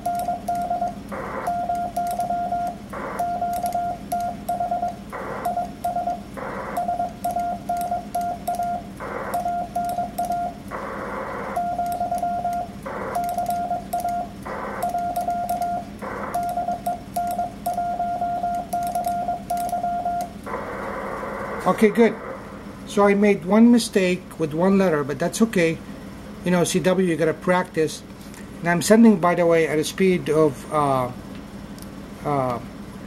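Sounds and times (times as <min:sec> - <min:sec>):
morse code beeps: 0:00.0 - 0:20.4
low hum: 0:00.0 - 0:24.4.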